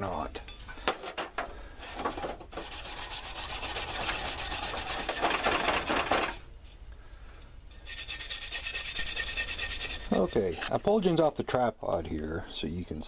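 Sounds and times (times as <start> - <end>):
wire brush scrubbing steel blade: 2.6 - 5.9, 7.8 - 10.8.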